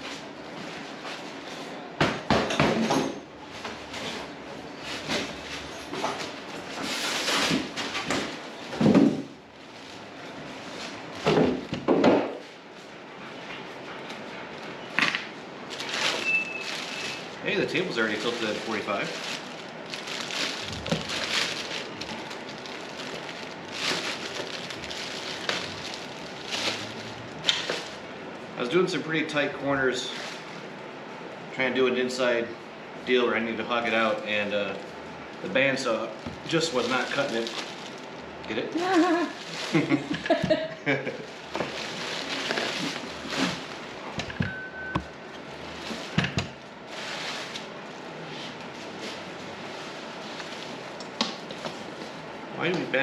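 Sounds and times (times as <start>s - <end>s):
packing material rustling: 15.6s - 28.1s, 34.7s - 40.1s, 41.2s - 44.2s, 45.7s - 52.2s.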